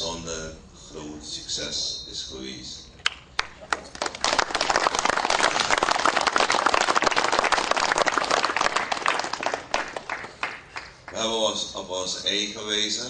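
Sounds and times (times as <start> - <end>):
audience applauding: 3.4 - 11.2.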